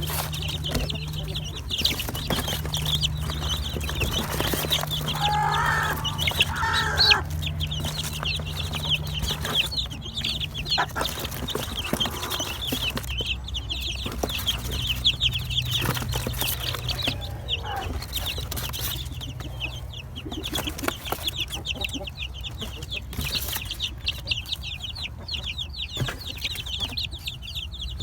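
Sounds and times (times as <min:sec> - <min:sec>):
handling knocks and clicks: 0:00.0 - 0:17.3
chicks peeping: 0:00.0 - 0:28.0.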